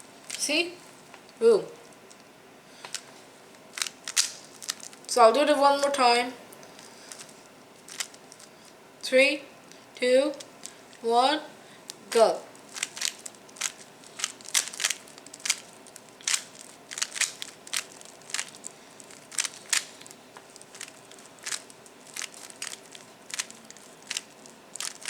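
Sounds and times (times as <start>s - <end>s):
puzzle cube plastic clicks: 3.7s - 5.1s, 7.9s - 8.5s, 12.6s - 25.0s.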